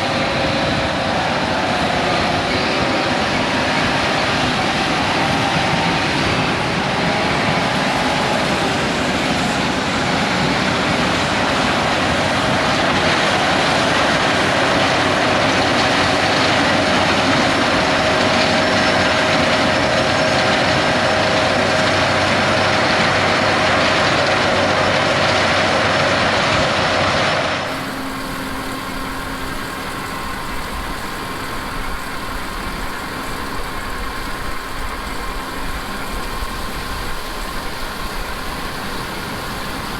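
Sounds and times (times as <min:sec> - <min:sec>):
combine harvester running: 0:00.0 - 0:39.9
machine hum: 0:27.7 - 0:39.9.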